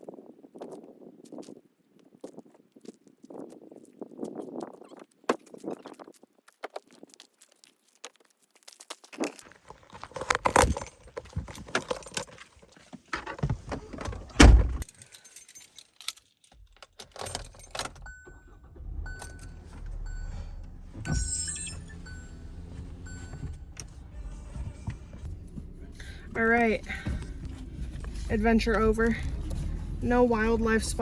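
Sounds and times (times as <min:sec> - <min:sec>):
car keys jangling: 0:10.2 - 0:12.8, 0:13.8 - 0:30.0
car engine running: 0:18.0 - 0:31.0
warning chime beeping: 0:21.1 - 0:23.8.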